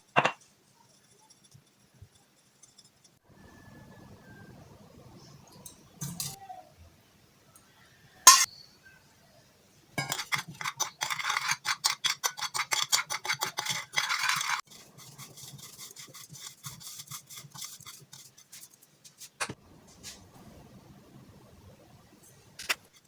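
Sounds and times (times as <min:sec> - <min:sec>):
rapid rubbing strokes: 0:10.3 - 0:18.8.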